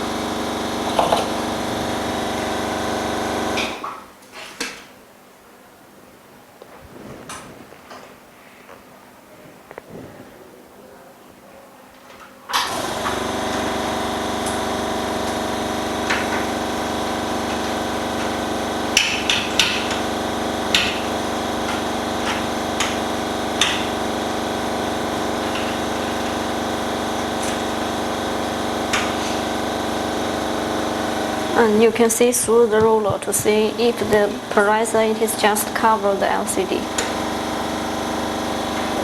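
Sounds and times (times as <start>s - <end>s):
machine motor humming: 0.0s - 3.9s, 12.5s - 39.0s.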